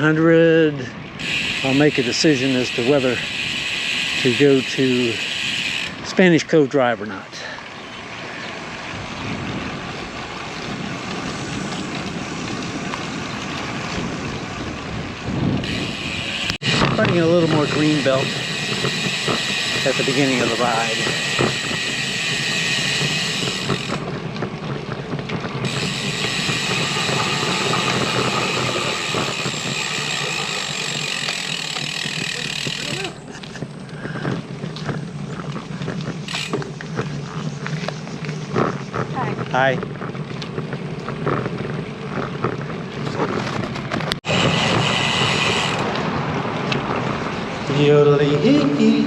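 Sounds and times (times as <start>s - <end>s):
bicycle hub ratchet clicking: 1.2s - 6.2s, 15.6s - 24.2s, 25.2s - 38.9s, 44.2s - 46.0s
wind noise: 8.0s - 49.0s
tyre noise: 9.2s - 49.0s.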